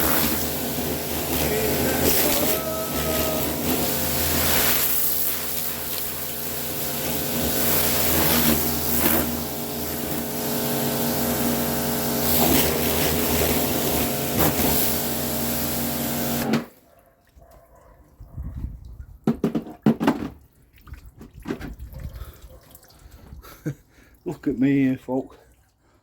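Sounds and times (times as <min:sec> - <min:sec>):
water spraying on metal: 0:00.0 - 0:16.6
pressure washer motor hum: 0:00.0 - 0:16.7.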